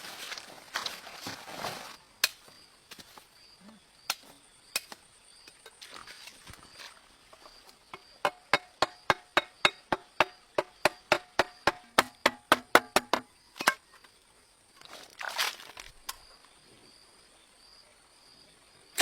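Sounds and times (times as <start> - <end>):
sharp knocks: 7.9 - 13.3.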